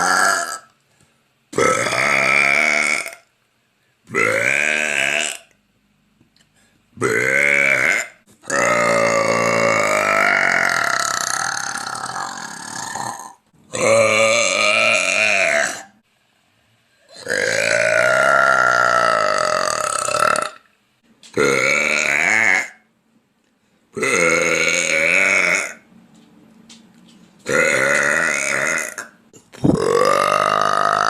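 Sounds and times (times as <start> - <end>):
woman burping loudly: 0.0 - 0.7, 1.5 - 3.3, 4.1 - 5.5, 7.0 - 16.0, 17.1 - 20.6, 21.4 - 22.8, 24.0 - 25.8, 27.5 - 31.0.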